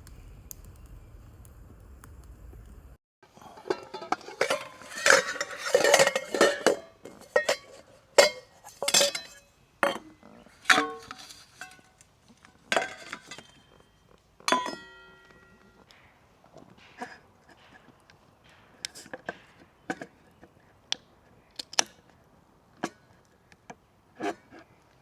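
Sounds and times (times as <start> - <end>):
dishes and utensils clinking: 3.4 - 12.0, 12.6 - 15.8.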